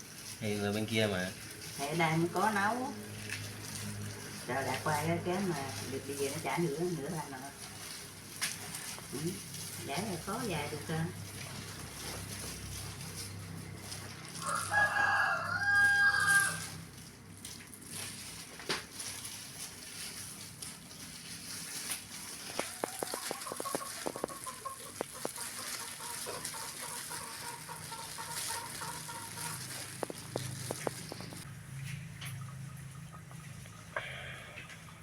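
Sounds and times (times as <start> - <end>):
rooster crowing: 14.3 - 16.8.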